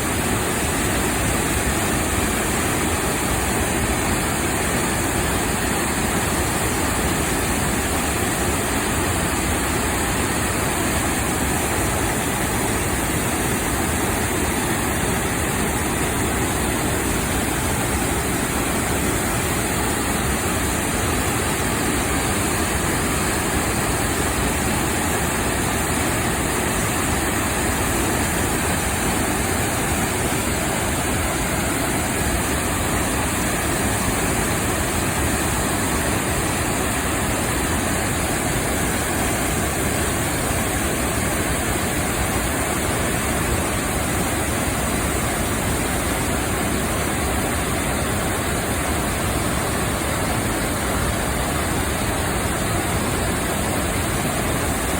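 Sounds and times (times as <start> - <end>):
waterfall roaring: 0.0 - 54.9.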